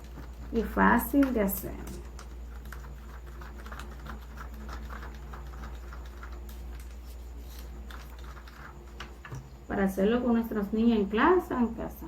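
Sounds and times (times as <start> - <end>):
stirrer tapping a cup: 0.0 - 7.0, 7.6 - 9.5.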